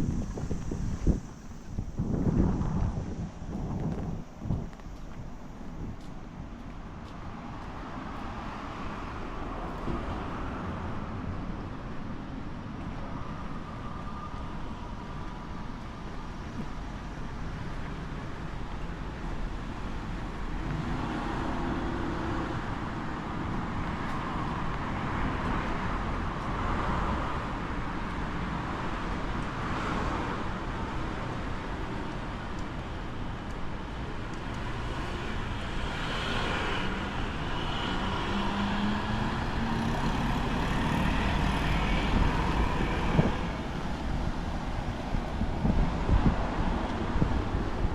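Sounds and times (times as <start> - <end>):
road traffic passing: 0.0 - 47.9
engine hum: 28.4 - 47.9.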